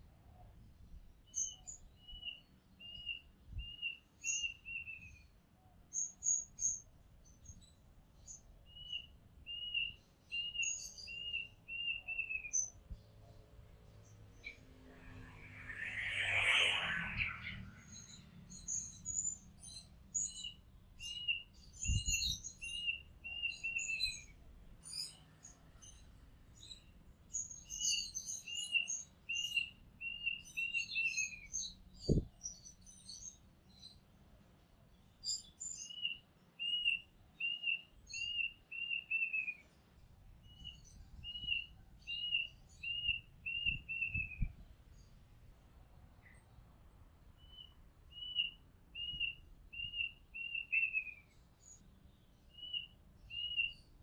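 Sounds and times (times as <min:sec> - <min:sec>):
bird singing whistles: 0:08.7 - 0:12.7, 0:15.5 - 0:24.3, 0:35.3 - 0:39.6, 0:40.5 - 0:44.6, 0:47.4 - 0:51.8, 0:52.5 - 0:53.9.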